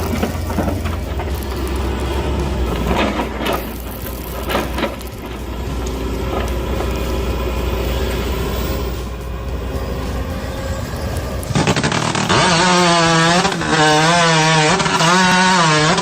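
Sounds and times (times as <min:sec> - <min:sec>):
heavy machine engine rumbling: 0:00.0 - 0:16.0
sharp cracks: 0:11.1 - 0:16.0.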